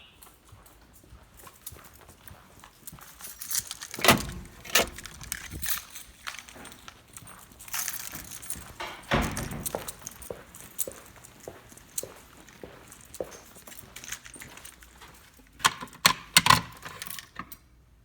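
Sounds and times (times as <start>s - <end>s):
footsteps on hard floor: 5.6s - 15.3s.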